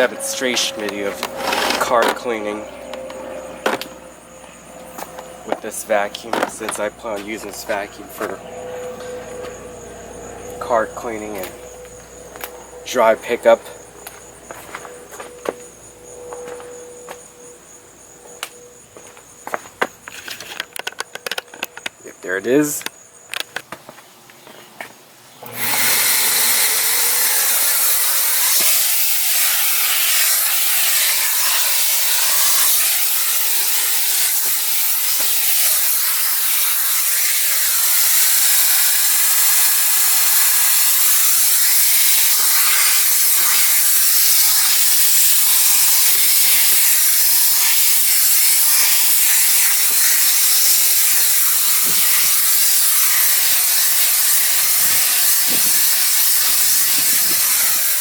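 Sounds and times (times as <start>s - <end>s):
vacuum cleaner motor running: 0.0s - 3.9s, 25.4s - 33.8s.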